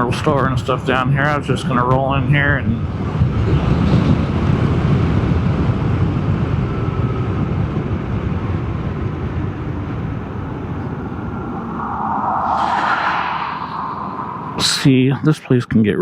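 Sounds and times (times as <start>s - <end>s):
wind noise on microphone: 9.7s - 15.2s.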